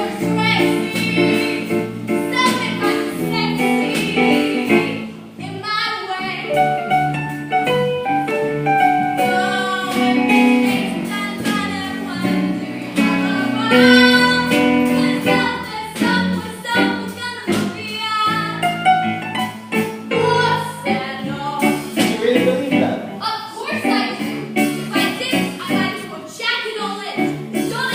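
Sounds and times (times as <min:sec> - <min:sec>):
singing with instrumental accompaniment: 0:00.0 - 0:27.9.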